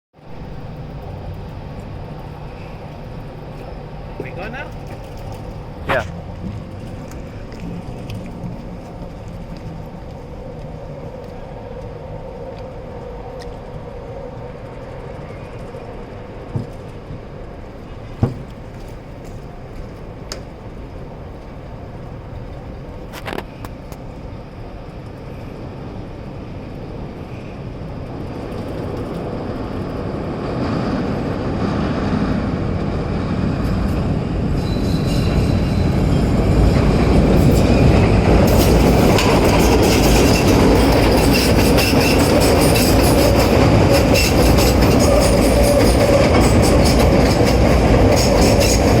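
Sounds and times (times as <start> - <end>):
train wheel and rail rumble: 0.2 - 49.0
high squeal: 34.5 - 36.4.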